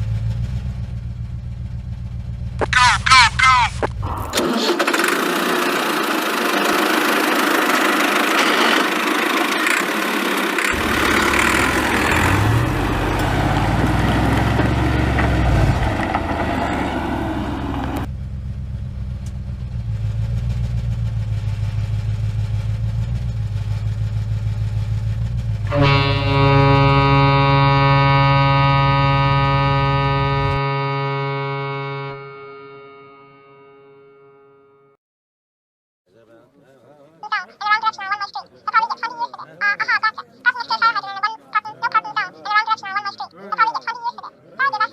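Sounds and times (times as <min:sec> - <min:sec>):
engine revving: 0:00.0 - 0:34.6
music with sustained notes: 0:25.7 - 0:34.9.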